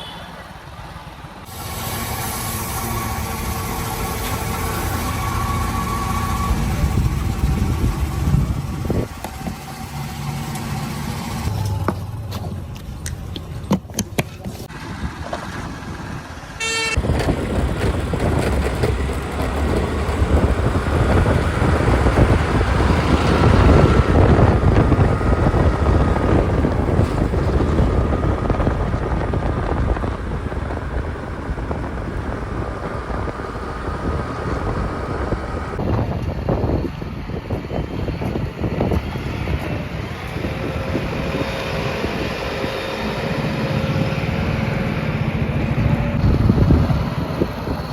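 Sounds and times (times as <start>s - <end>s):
heavy diesel machinery running: 0.0s - 13.6s, 14.6s - 47.9s
horn toot: 16.6s - 17.0s.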